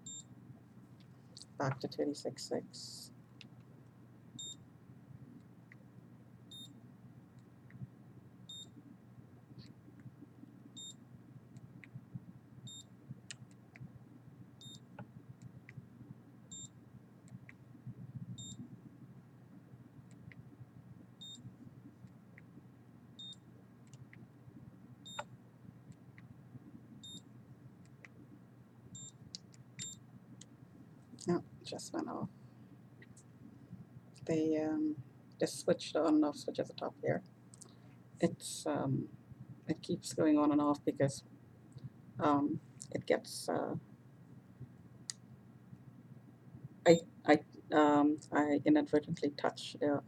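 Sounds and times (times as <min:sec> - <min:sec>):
faint low hum: 0:00.0 - 0:50.0.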